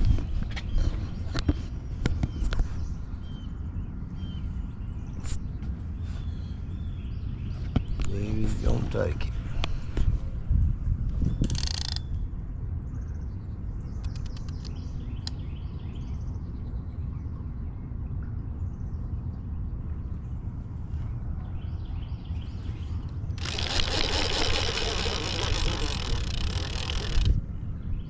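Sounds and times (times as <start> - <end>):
steady low rumble: 0.0 - 23.4
sharp clicks: 11.4 - 12.0, 14.0 - 15.4, 23.4 - 27.4.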